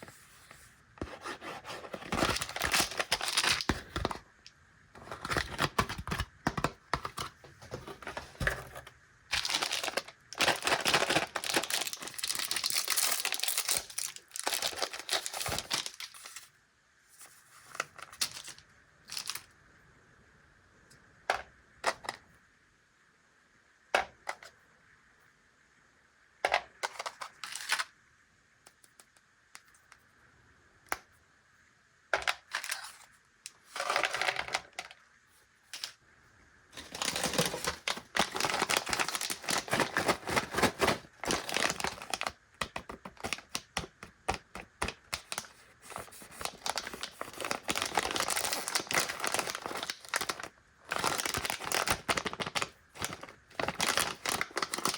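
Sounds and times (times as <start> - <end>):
plastic packaging crinkling: 1.1 - 4.2, 5.0 - 16.5, 17.6 - 19.5, 33.7 - 34.9, 36.8 - 54.9
wrappers clicking and tapping: 9.3 - 16.1, 36.8 - 54.9.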